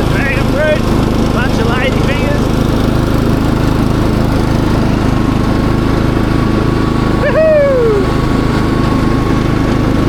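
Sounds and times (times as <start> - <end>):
ride-on mower engine running: 0.0 - 10.0
short call gliding down in pitch: 7.2 - 8.2.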